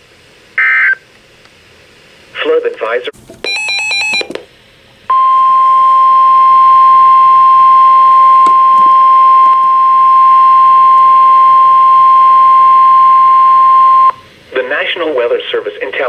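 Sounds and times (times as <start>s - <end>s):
steady warning alarm tone: 5.1s - 14.2s.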